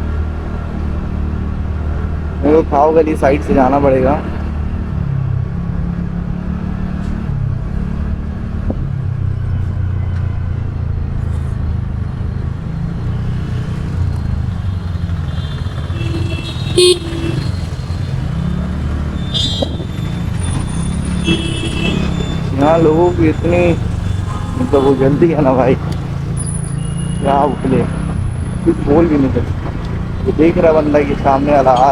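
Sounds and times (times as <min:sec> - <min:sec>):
street traffic: 0:00.0 - 0:31.9
scooter engine running: 0:13.7 - 0:22.8
vehicle horns honking: 0:14.8 - 0:18.4, 0:19.2 - 0:27.2.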